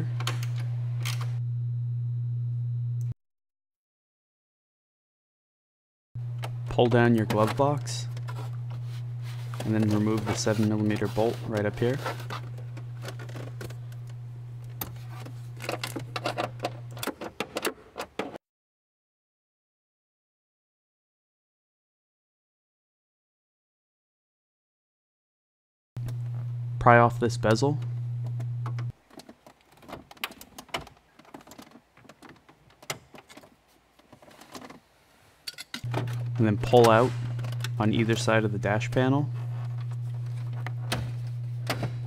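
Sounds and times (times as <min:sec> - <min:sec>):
steady low hum: 0:00.1 - 0:03.2, 0:06.2 - 0:17.1, 0:26.0 - 0:28.9, 0:35.9 - 0:42.0.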